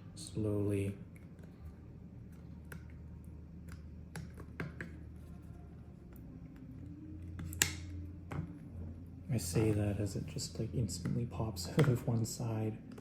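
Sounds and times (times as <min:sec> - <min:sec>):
low steady hum: 0:00.0 - 0:13.0
plastic clicks and taps: 0:11.0 - 0:12.0.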